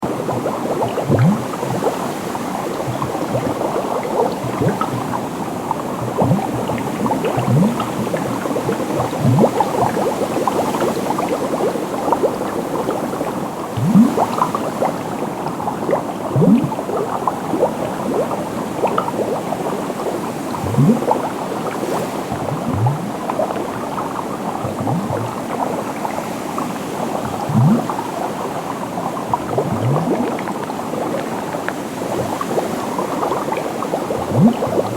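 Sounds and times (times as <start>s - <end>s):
water bubbling and gurgling: 0.0s - 34.9s
deep bloops rising in pitch: 0.8s - 1.9s, 5.9s - 9.9s, 13.7s - 14.3s, 16.3s - 16.8s, 20.6s - 21.2s, 22.4s - 23.8s, 24.7s - 25.8s, 27.3s - 27.9s, 29.3s - 30.5s, 34.2s - 34.9s.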